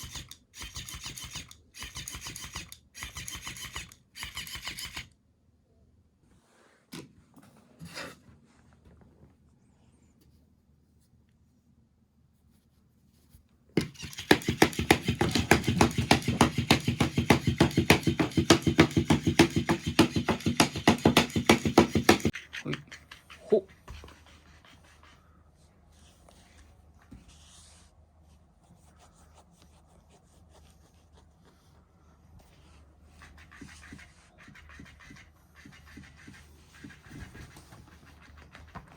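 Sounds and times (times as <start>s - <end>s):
toy motor rattling buzz: 0.0s - 5.1s, 13.8s - 22.8s.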